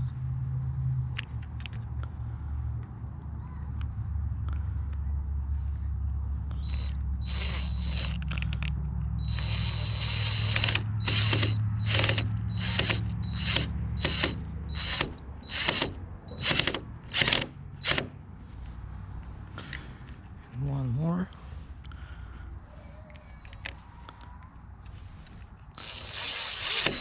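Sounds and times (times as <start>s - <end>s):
steady low hum: 4.2s - 20.6s.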